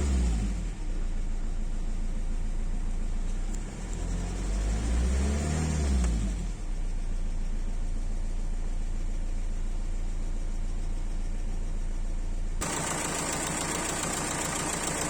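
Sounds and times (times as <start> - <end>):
diesel engine revving: 0.0 - 0.8, 3.5 - 6.6, 12.6 - 15.0.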